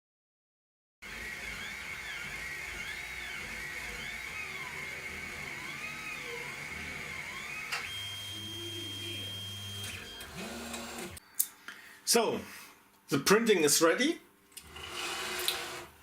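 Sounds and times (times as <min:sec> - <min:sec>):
stepper motors whining: 0:01.0 - 0:11.2.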